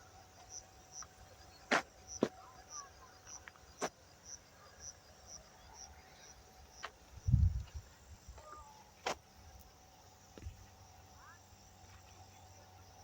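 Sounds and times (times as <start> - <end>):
insect chirping: 0.0 - 13.0.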